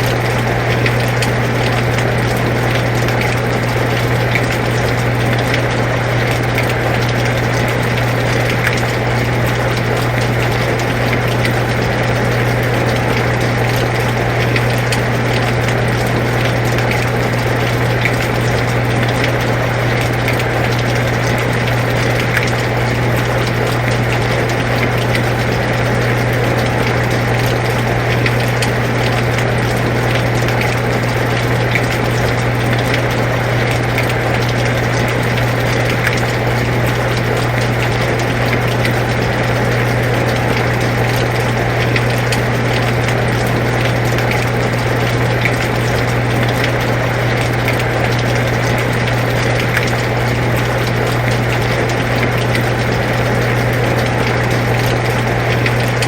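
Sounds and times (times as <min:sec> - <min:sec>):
air conditioner humming: 0:00.0 - 0:56.0.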